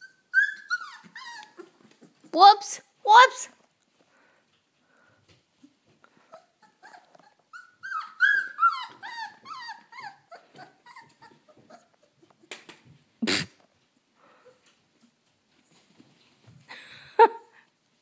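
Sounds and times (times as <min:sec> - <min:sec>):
puppies yipping and whimpering: 0:00.0 - 0:02.3, 0:06.2 - 0:12.4
puppies growling: 0:00.0 - 0:02.4, 0:06.1 - 0:12.5.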